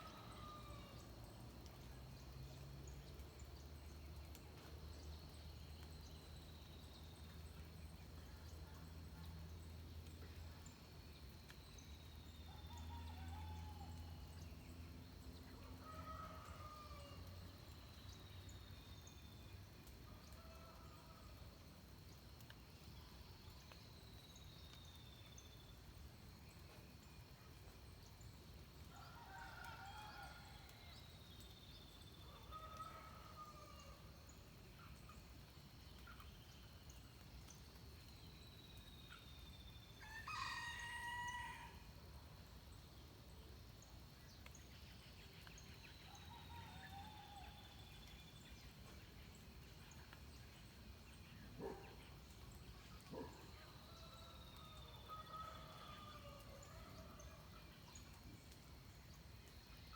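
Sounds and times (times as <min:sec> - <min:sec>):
birds chirping softly: 0:42.6 - 0:59.9.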